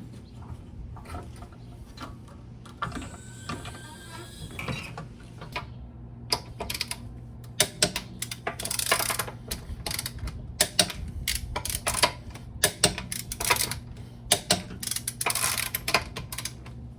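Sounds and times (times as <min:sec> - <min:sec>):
ratchet wrench clicking: 0:07.6 - 0:16.6.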